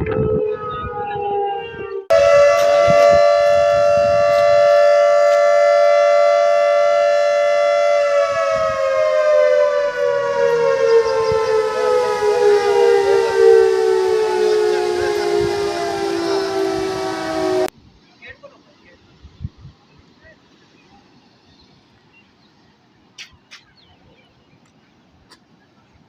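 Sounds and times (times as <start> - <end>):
warning siren wailing: 0.0 - 17.7.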